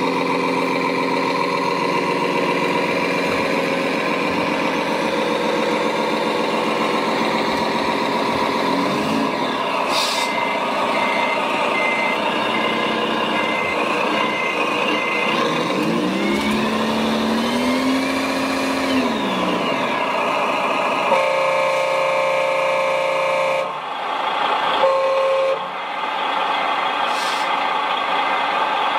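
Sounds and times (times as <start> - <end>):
reversing beeper: 9.8 - 20.1.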